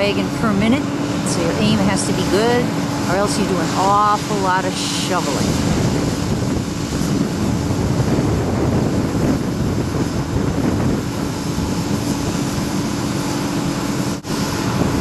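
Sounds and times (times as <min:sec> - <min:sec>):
combine harvester running: 0:00.0 - 0:15.0.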